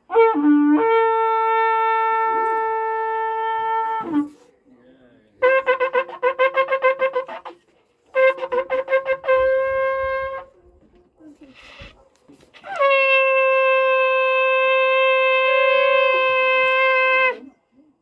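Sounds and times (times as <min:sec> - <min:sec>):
ram's horn blowing: 0:00.1 - 0:04.6, 0:05.4 - 0:10.7, 0:11.3 - 0:17.6.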